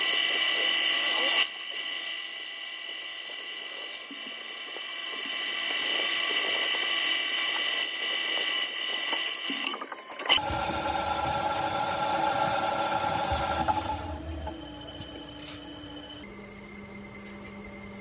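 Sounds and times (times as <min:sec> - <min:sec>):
machine tool whining: 0:00.0 - 0:18.0.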